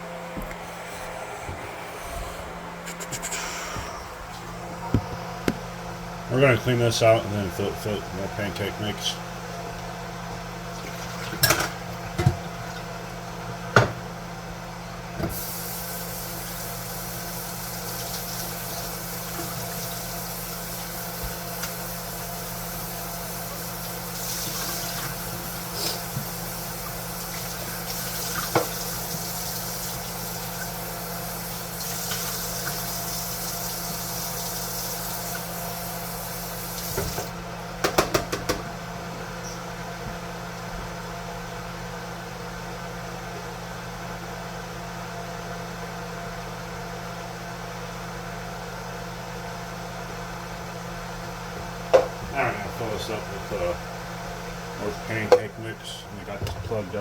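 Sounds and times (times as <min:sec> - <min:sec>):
kitchen tap running into sink: 0:15.3 - 0:37.3.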